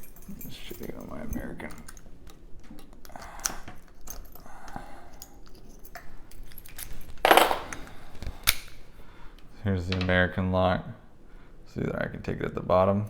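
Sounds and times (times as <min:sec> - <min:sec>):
small metal clicks and clinks: 0:00.0 - 0:04.5.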